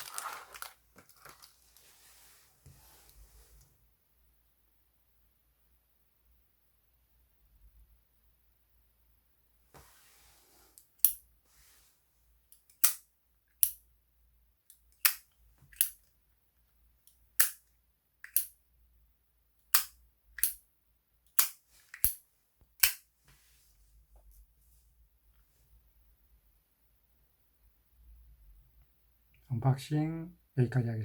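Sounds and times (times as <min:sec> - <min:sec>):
lighter lid clicking open and shut: 0:12.7 - 0:13.0, 0:15.0 - 0:16.0, 0:17.4 - 0:17.6, 0:18.2 - 0:18.5, 0:19.7 - 0:20.6, 0:21.3 - 0:22.2, 0:22.8 - 0:23.0.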